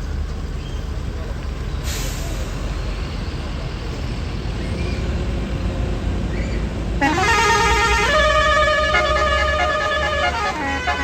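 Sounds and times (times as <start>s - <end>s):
bus engines idling: 0.0s - 11.0s
traffic: 0.0s - 11.0s
multi-tone bus horn: 6.8s - 11.0s.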